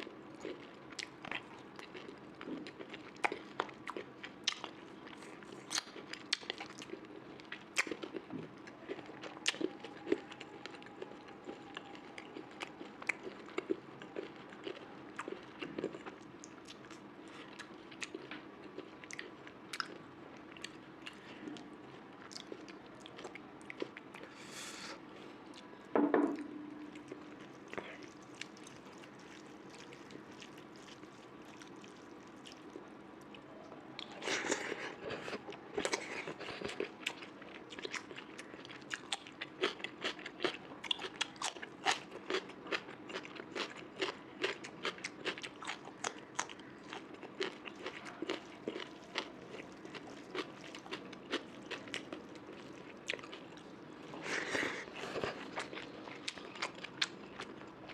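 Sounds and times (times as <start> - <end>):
chewing and crunching food: 0.0 - 25.9, 26.8 - 57.9
loud knock: 26.0 - 26.7.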